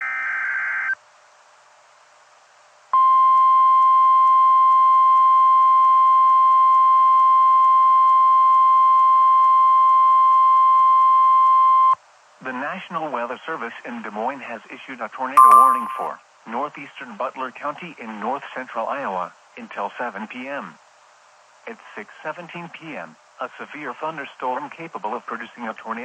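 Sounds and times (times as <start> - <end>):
warbling data tone: 15.4 - 16.1.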